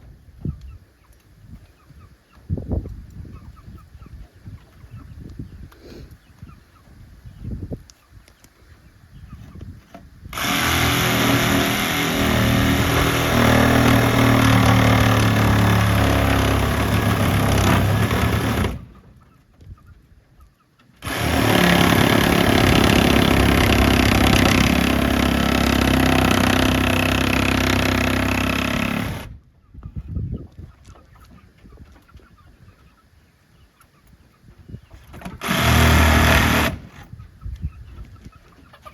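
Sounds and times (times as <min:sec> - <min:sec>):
electric power tool running: 0:10.3 - 0:18.9, 0:21.0 - 0:29.3, 0:35.2 - 0:37.0.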